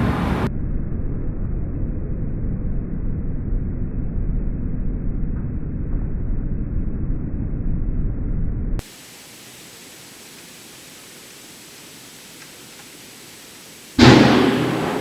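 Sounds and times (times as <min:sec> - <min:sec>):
steady hiss: 0:00.0 - 0:00.5, 0:08.8 - 0:15.0
thunder rumbling: 0:00.0 - 0:00.5, 0:09.4 - 0:15.0.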